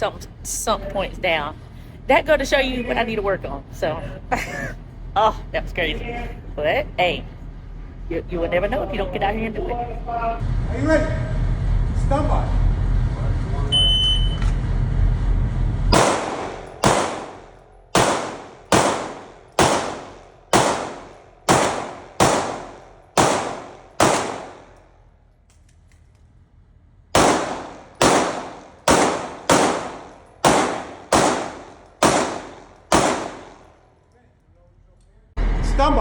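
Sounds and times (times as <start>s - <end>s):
pistol shots with echo: 15.9s - 24.8s, 27.1s - 33.7s.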